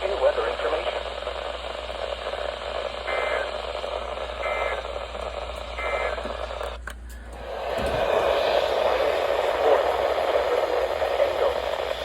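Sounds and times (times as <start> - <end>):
warbling digital data bursts: 0.0 - 6.2
radio hiss and hum: 0.0 - 12.0.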